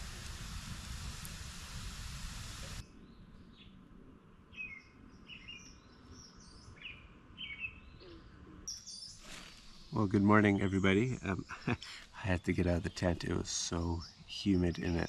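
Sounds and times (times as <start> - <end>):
steady hiss: 0.0 - 2.8, 9.2 - 15.0
birds chirping: 4.5 - 15.0.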